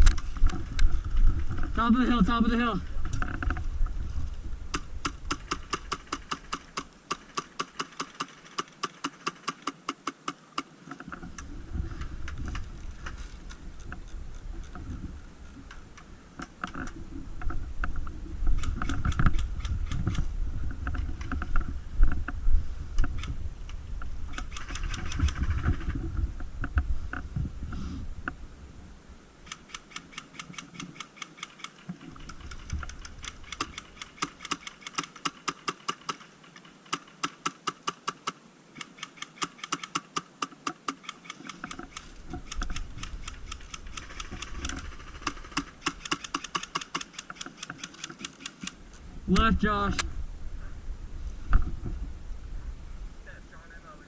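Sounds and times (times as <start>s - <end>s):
airsoft gun firing: 4.8s - 9.8s
rustling gear and movement: 10.8s - 28.0s, 29.5s - 49.2s.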